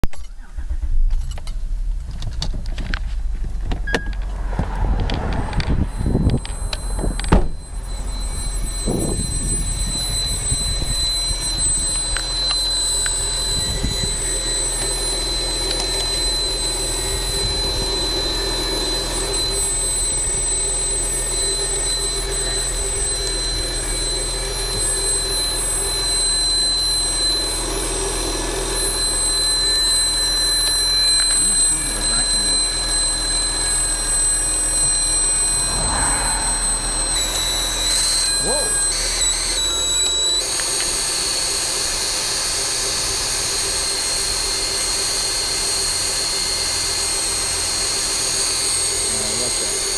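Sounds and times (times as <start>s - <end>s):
low hum: 0.0s - 46.2s
high-pitched ringing tone: 3.0s - 49.9s.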